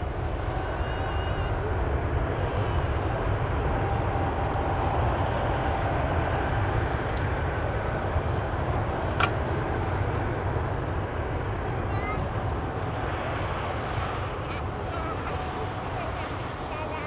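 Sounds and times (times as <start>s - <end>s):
faint jet whine: 0.0s - 17.0s
jet engines running: 0.0s - 17.0s.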